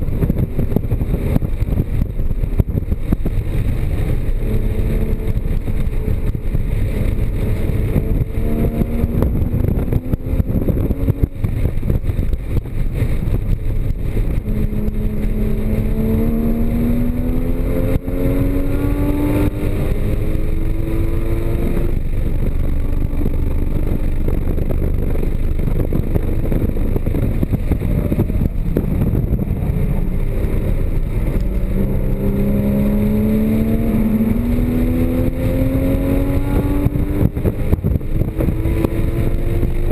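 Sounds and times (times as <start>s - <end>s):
road and wind noise: 0.0s - 39.9s
car engine revving hard: 2.7s - 39.9s.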